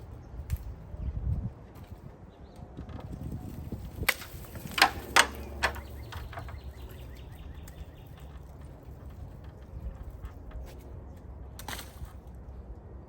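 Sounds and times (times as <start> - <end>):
branch cracking: 3.5 - 8.4.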